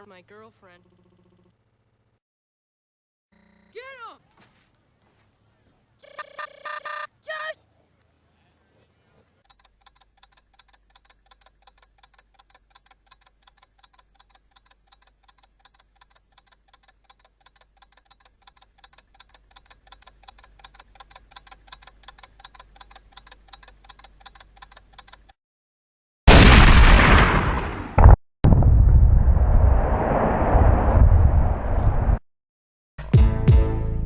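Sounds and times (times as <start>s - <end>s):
clock ticking: 9.5s - 25.4s.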